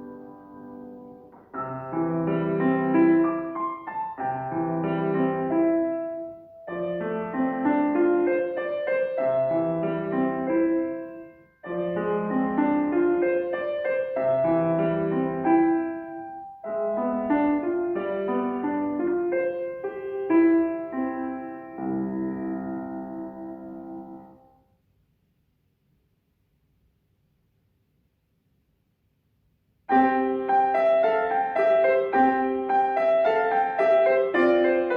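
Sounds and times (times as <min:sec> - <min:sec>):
solo piano piece: 0:00.0 - 0:24.8, 0:29.9 - 0:34.9.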